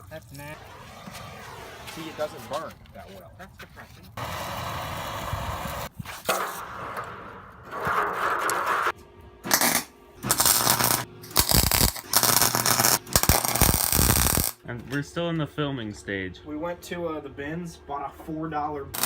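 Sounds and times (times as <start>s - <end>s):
steady noise: 10.2s - 14.6s.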